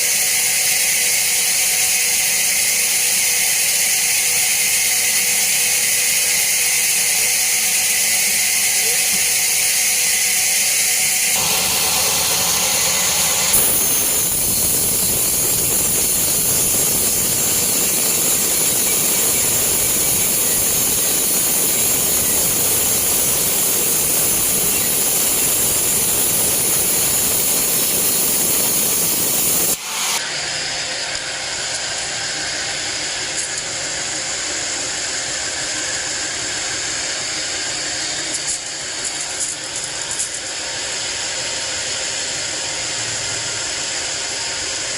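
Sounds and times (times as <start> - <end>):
band saw cutting log: 0.0 - 30.4
quieter steady machine noise: 0.0 - 44.9.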